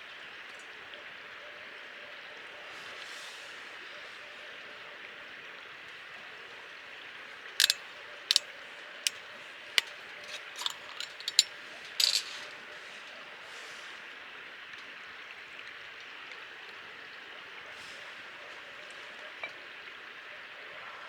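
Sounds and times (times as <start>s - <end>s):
sharp clicks and clinks: 7.6s - 8.4s, 9.8s - 12.5s.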